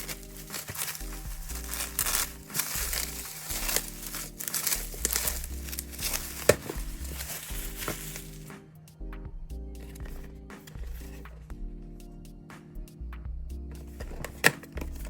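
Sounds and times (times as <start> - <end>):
packaging crinkling and rustling: 0.0 - 8.5
soft background music: 0.0 - 15.0.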